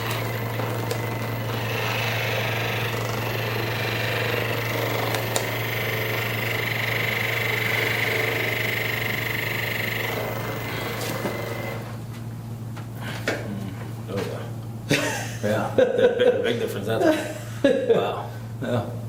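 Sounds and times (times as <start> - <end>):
massage gun hammering buzz: 0.0 - 12.0.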